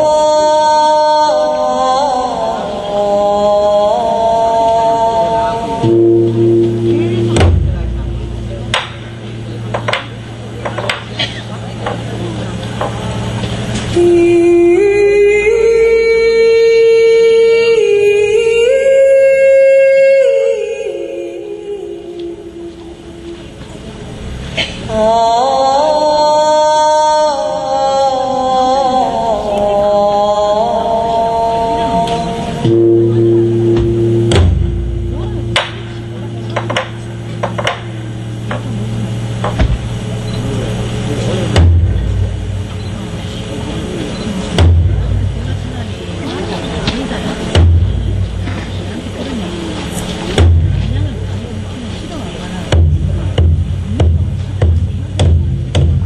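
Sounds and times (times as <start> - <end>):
person singing long held notes: 0.0 - 8.8, 13.9 - 23.5, 24.8 - 36.6
steady low hum: 0.0 - 56.0
sharp clicks and knocks: 9.7 - 11.2, 35.6 - 37.9.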